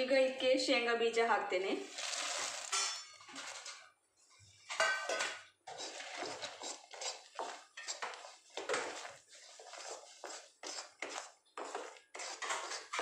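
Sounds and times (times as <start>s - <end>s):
spoon scraping and knocking a pan: 2.0s - 3.9s, 4.6s - 13.0s.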